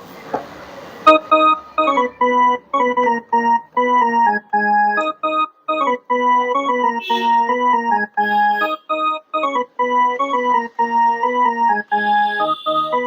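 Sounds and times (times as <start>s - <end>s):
electronic keyboard ringtone melody: 1.0s - 13.0s.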